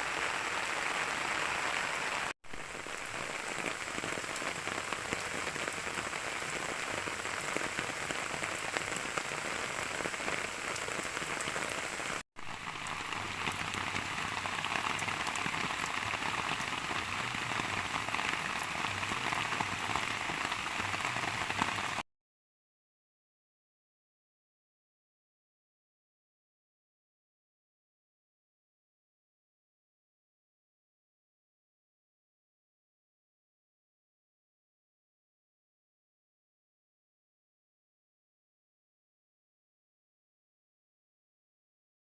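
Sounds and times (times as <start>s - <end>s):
rain drops pattering: 0.0s - 22.0s.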